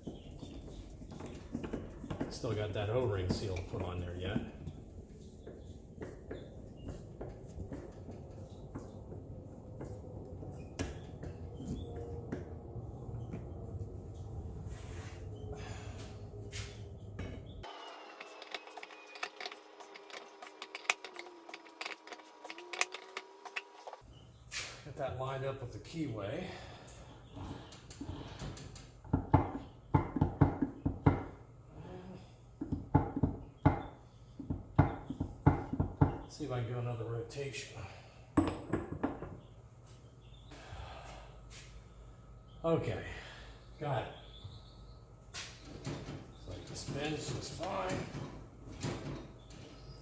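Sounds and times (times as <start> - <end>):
metal parts clicking and knocking: 18.2 - 24.0
tools knocking on metal: 38.4 - 39.4.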